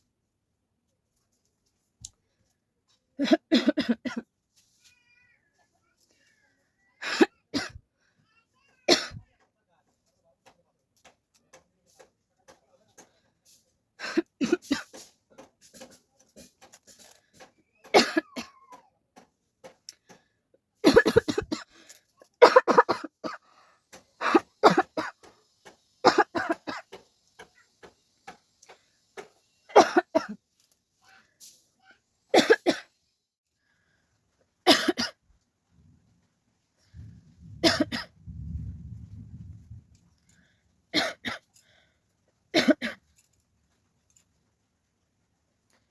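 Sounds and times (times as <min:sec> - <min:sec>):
person coughing: 0:03.2 - 0:04.2, 0:07.0 - 0:07.8, 0:17.9 - 0:18.6, 0:20.8 - 0:21.6, 0:22.4 - 0:23.4, 0:24.2 - 0:25.1, 0:26.1 - 0:26.8, 0:29.7 - 0:30.4, 0:32.4 - 0:32.9, 0:34.7 - 0:35.2, 0:37.5 - 0:38.1, 0:41.0 - 0:41.4, 0:42.6 - 0:43.0.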